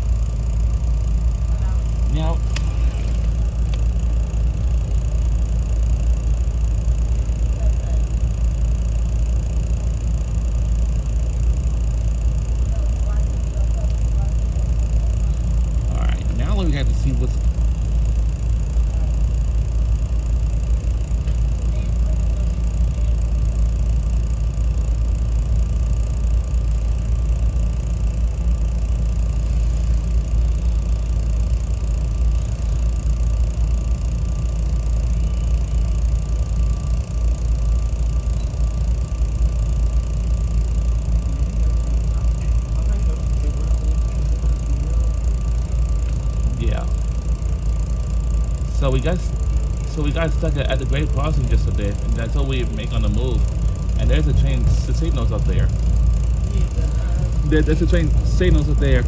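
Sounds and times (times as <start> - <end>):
faint steady whine: 0.0 - 59.0
train car rumble: 38.2 - 59.0.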